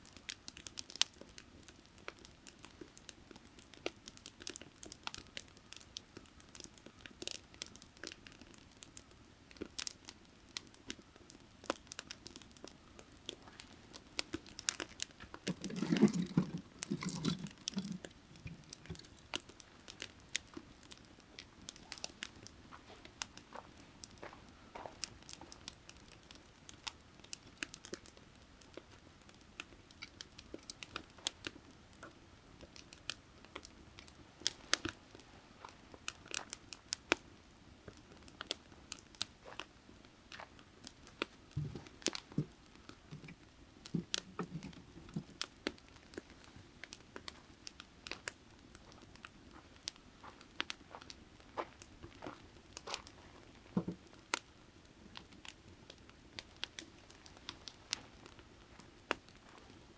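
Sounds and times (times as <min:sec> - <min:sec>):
firewood crackling and popping: 0:00.0 - 0:59.9
faint creek murmur: 0:13.4 - 0:20.7.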